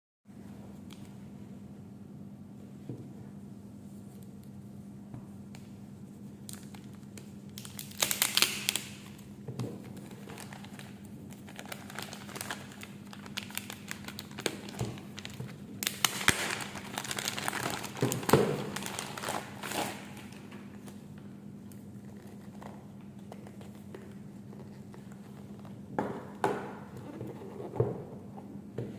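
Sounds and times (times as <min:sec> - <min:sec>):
steady low hum: 0:00.3 - 0:28.9
packaging crinkling and rustling: 0:06.4 - 0:25.9.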